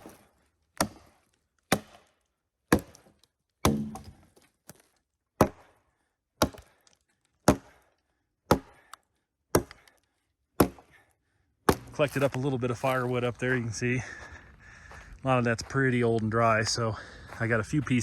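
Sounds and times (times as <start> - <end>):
axe chopping firewood: 0.0 - 4.8, 5.4 - 5.8, 6.4 - 7.9, 8.5 - 10.0, 10.6 - 11.0, 11.7 - 13.0.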